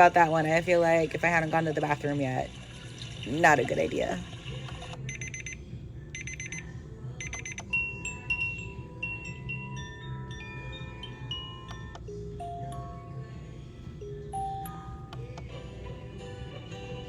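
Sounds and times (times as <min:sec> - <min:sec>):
rapid electronic beeping: 0:04.7 - 0:05.6, 0:06.2 - 0:08.8
chime melody: 0:07.3 - 0:15.2.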